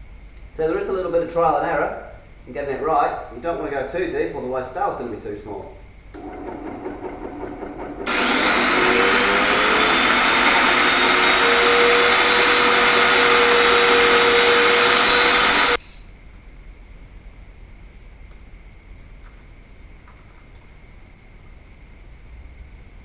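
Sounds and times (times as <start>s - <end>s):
router motor whine: 6.2s - 15.8s.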